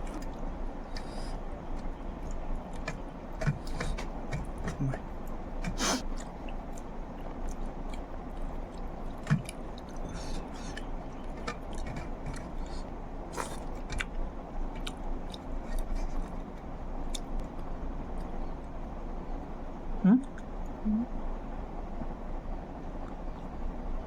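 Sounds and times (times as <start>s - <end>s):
wet chewing and mouth smacks: 0.0s - 18.8s.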